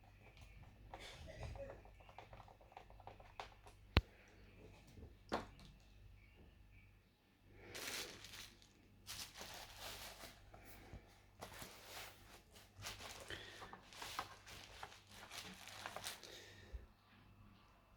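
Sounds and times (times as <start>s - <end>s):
rustling and scraping: 7.7s - 16.8s.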